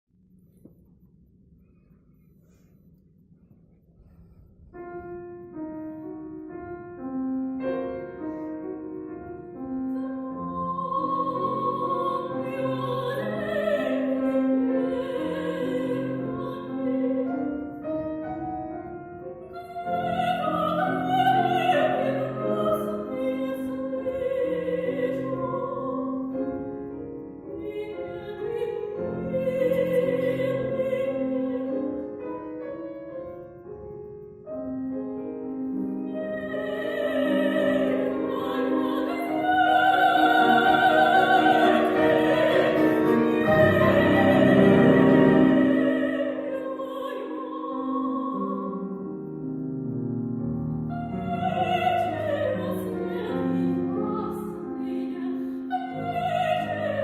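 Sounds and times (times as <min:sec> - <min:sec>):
piano accompaniment: 0:04.2 - 0:57.0
trained voice singing with vibrato: 0:36.1 - 0:48.8.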